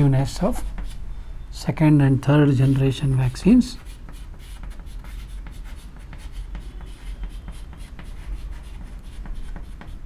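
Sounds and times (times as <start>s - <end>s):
pen scratching on paper: 2.5s - 10.0s.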